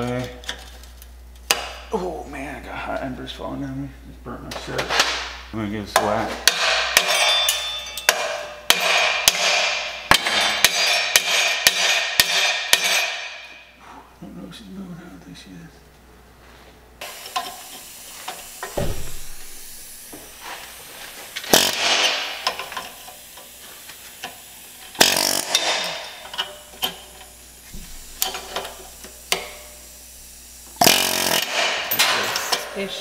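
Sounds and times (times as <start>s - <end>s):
hammer striking metal: 5.9s - 13.7s
sizzling hiss of hot metal: 17.0s - 32.8s.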